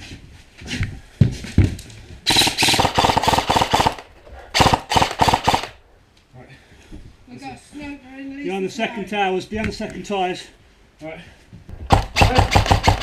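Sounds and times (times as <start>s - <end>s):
airsoft gun full-auto fire: 2.3s - 5.8s, 11.8s - 13.0s.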